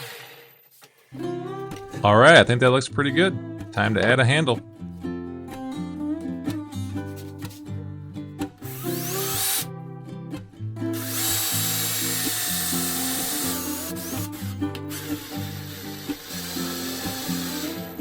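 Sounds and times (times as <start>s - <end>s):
power drill running: 0.0s - 0.6s, 8.7s - 9.7s, 10.9s - 18.0s
background music: 1.2s - 18.0s.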